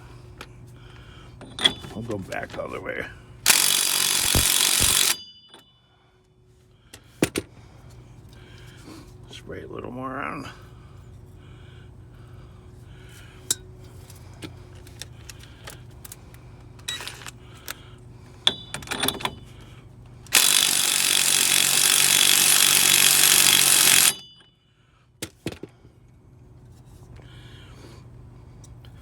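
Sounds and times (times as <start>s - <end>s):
impact wrench hammering: 1.4s - 2.1s, 3.5s - 5.8s, 18.5s - 19.5s, 20.3s - 24.5s.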